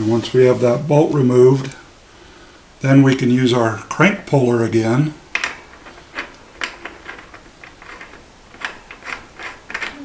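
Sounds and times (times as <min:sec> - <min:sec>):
light metallic clicks and scrapes: 0:05.4 - 0:10.0.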